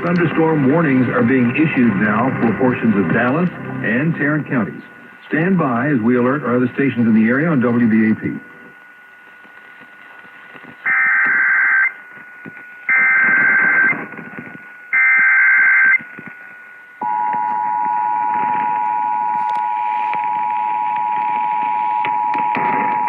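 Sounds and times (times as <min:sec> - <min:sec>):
radio hiss: 0:00.0 - 0:23.0
data bursts over radio: 0:00.1 - 0:16.6.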